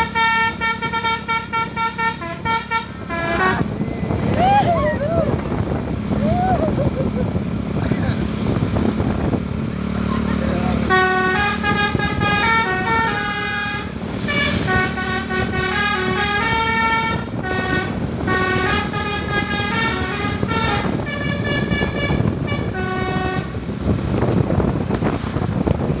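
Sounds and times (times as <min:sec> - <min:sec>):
multi-tone bus horn tune: 0:00.0 - 0:04.2, 0:10.2 - 0:24.9.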